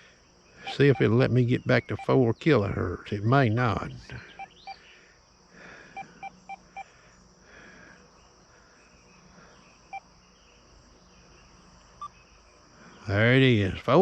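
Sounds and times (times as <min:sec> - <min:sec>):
metal detector beeping: 0:00.6 - 0:02.3, 0:04.3 - 0:04.8.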